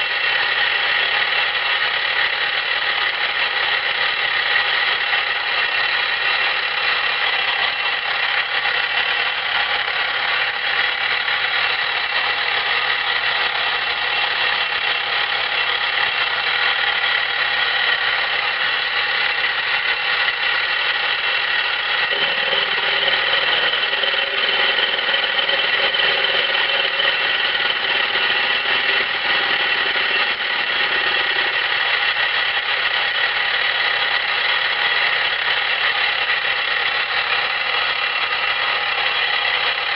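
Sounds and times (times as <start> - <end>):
milling machine high-pitched whine: 0.0 - 39.9.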